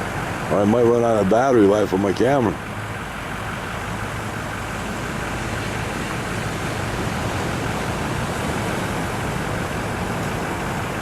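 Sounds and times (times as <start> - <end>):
waves breaking: 0.0 - 11.0.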